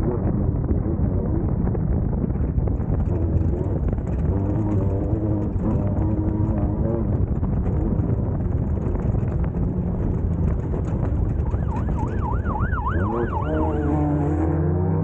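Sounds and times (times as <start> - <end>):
race car engine: 2.1 - 15.0
warbling siren-like tone: 11.4 - 15.0.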